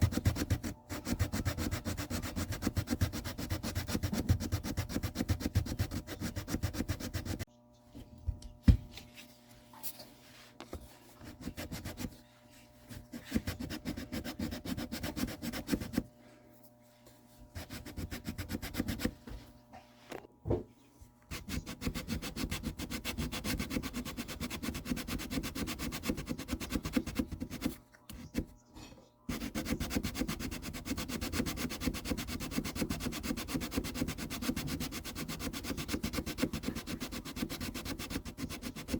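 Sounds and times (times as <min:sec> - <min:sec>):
hand sanding wood: 0:00.0 - 0:07.5, 0:10.8 - 0:12.2, 0:12.8 - 0:16.1, 0:17.5 - 0:19.4, 0:21.3 - 0:28.5, 0:29.3 - 0:38.9.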